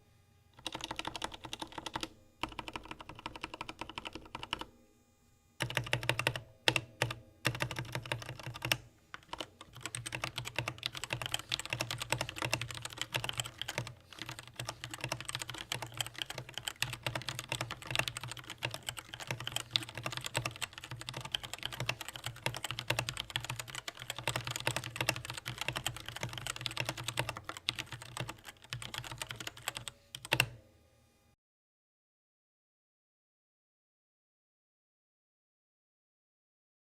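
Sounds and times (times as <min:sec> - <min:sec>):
mechanical keyboard typing: 0:00.6 - 0:04.7, 0:05.6 - 0:30.6.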